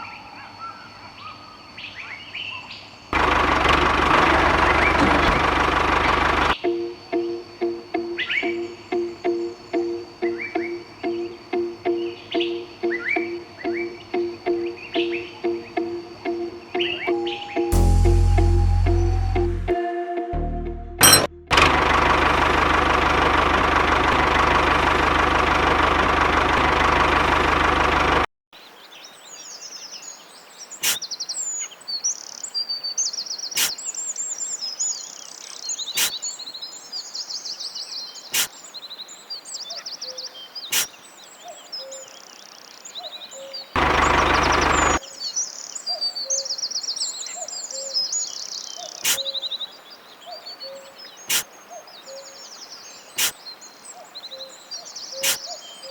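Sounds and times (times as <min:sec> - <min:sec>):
birds chirping and singing: 0:03.2 - 0:19.5, 0:31.0 - 0:55.9
loud steady sound with low hum: 0:43.8 - 0:45.0.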